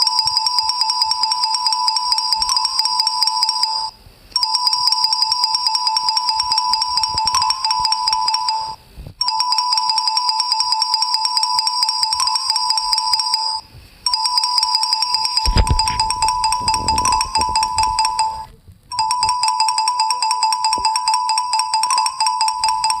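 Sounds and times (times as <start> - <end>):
electronic ringtone beeps: 0.0 - 23.0
low rumble: 15.5 - 18.9.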